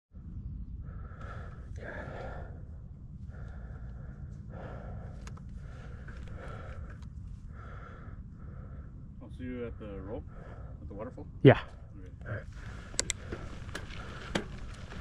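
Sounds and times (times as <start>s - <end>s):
steady low rumble: 0.1s - 15.0s
person breathing hard: 0.3s - 11.0s, 12.2s - 15.0s.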